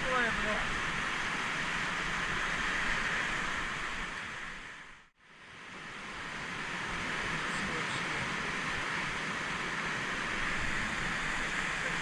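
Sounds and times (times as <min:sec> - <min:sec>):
fast river water rushing: 0:00.0 - 0:12.0.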